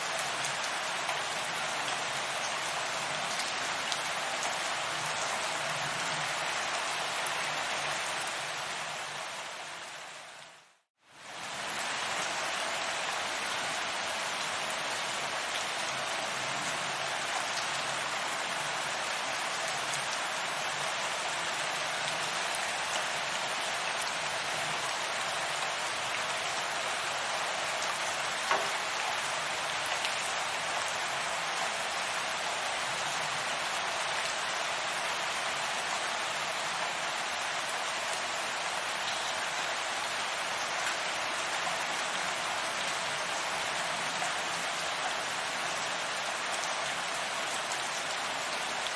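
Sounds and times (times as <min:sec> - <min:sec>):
steady rain hiss: 0:00.0 - 0:48.9.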